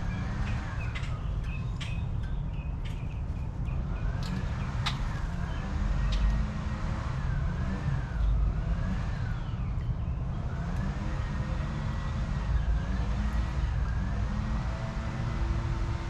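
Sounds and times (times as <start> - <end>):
low rumble of road traffic: 0.0 - 16.0.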